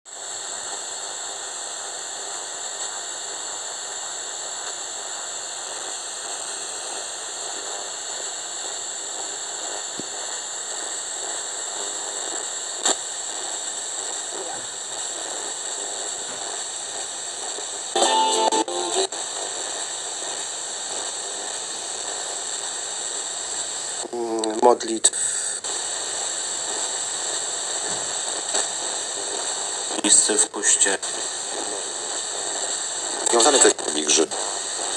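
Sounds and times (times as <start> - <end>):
radio static hissing: 0.2 - 34.9
radio station snatch: 33.2 - 34.6.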